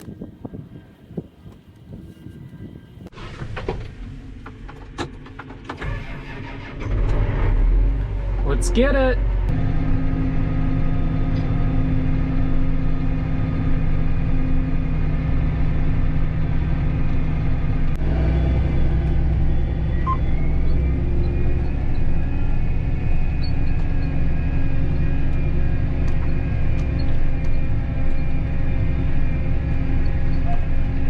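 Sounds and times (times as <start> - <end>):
diesel farm machinery running: 0.0 - 31.0
thin rising whine: 8.9 - 31.0.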